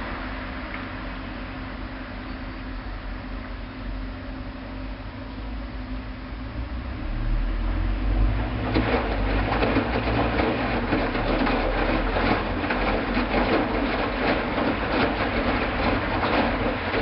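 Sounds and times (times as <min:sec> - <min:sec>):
washing machine rushing and sloshing: 0:07.6 - 0:17.0
washing machine clicks and clatter: 0:08.5 - 0:17.0.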